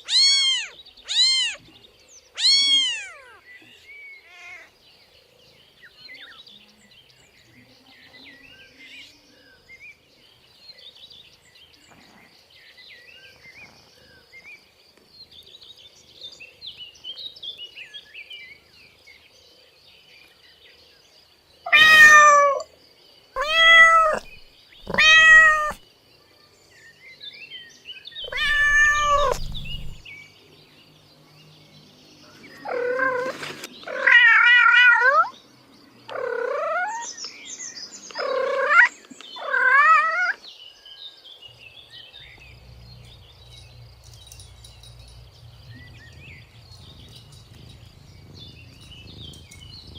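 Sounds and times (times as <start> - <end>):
kittens meowing: 0.0 - 1.7, 2.4 - 3.4, 4.2 - 4.7, 21.7 - 22.6, 23.4 - 25.8, 28.2 - 30.0, 36.1 - 37.1, 38.2 - 40.4.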